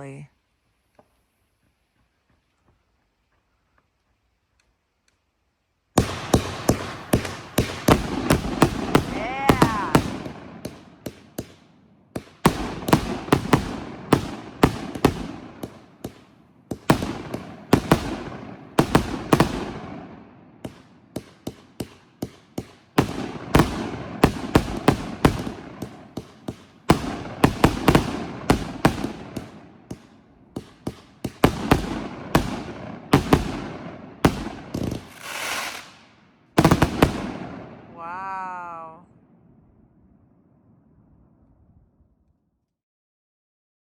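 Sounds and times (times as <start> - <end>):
fireworks bangs: 5.9 - 39.0.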